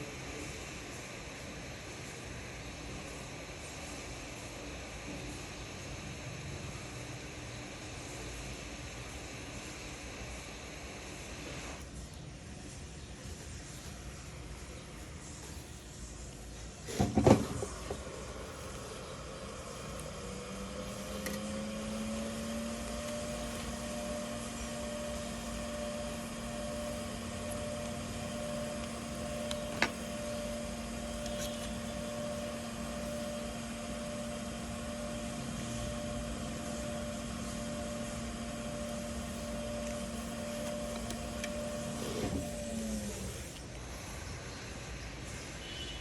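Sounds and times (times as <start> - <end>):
small electric motor humming: 14.1 - 44.2.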